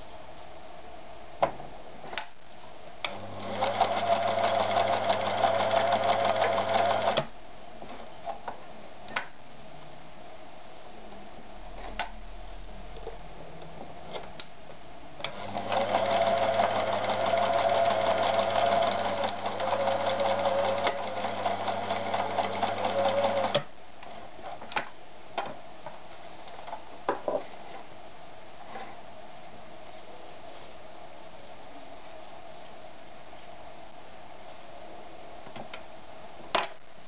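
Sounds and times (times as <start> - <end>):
sewing machine running: 3.1 - 7.2, 15.3 - 23.6.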